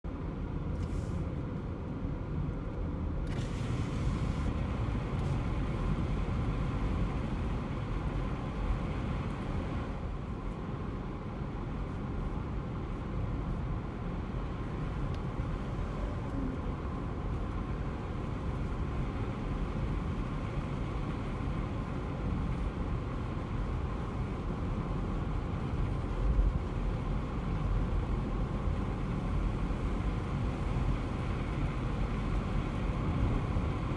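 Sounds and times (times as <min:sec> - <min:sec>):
car engine and tyres rumbling: 0:00.0 - 0:33.9.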